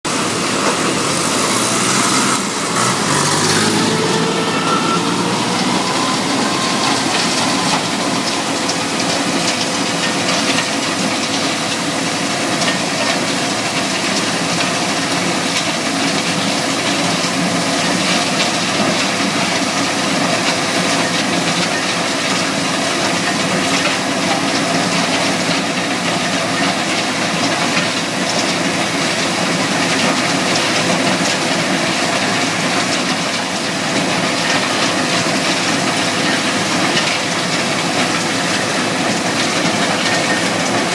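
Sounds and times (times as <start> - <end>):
machinery rushing noise: 0.0 - 11.9
constant machine hum: 0.1 - 40.9.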